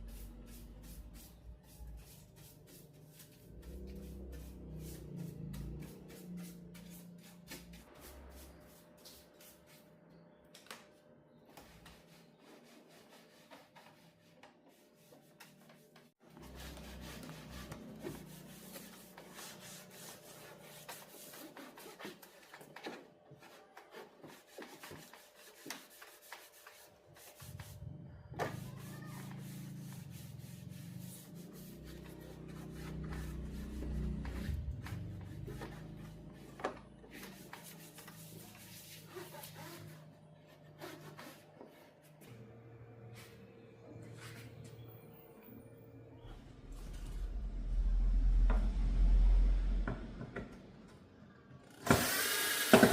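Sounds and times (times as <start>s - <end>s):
low hum: 42.3s - 51.7s.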